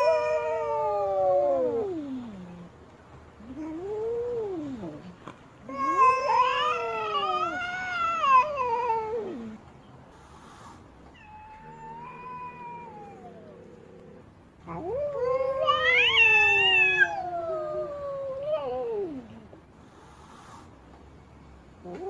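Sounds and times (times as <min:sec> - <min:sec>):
cat yowling: 0:00.0 - 0:02.5, 0:03.4 - 0:09.6, 0:11.1 - 0:19.4.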